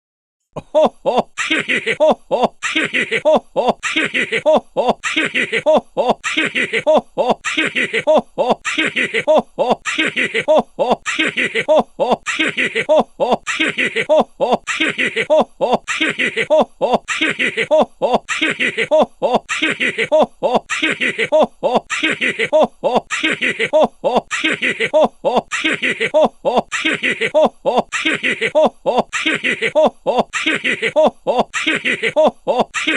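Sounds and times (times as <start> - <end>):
cartoonish laughing voice: 0.6 - 32.9.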